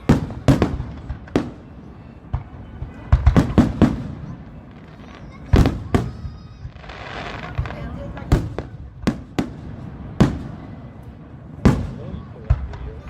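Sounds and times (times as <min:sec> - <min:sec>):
fireworks bangs: 0:00.0 - 0:13.0.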